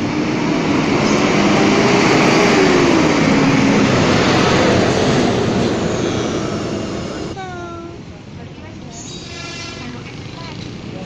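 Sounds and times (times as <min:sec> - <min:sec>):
bus passing close by: 0:00.0 - 0:11.0.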